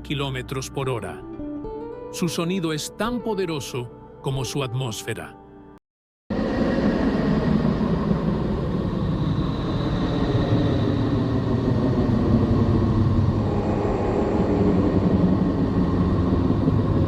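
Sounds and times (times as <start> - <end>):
dense low rumble: 6.6 - 17.0.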